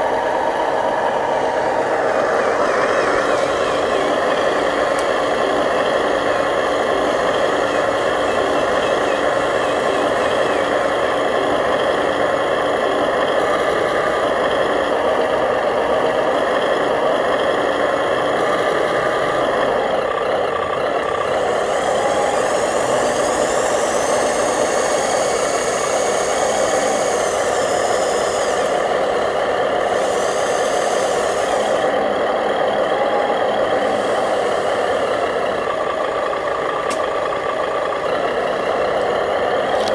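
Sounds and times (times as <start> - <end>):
remote-control truck engine drone: 0.0 - 39.9
hiss with falling whine: 21.3 - 32.0, 33.7 - 35.8.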